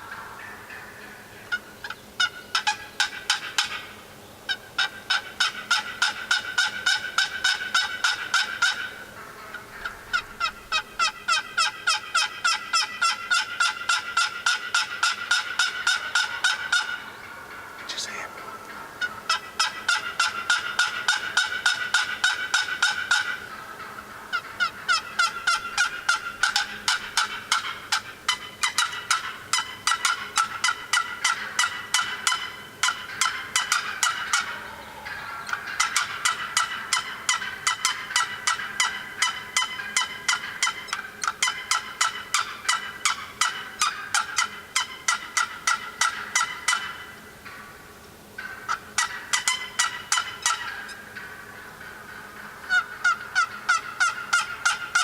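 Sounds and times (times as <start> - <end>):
turkey yelping and cutting: 4.5 - 17.2, 17.9 - 47.0, 48.4 - 55.0.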